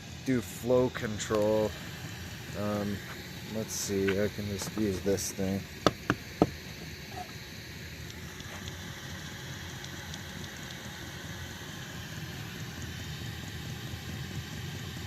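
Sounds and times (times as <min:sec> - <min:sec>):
heater burner and blower rumble: 0:00.0 - 0:15.0.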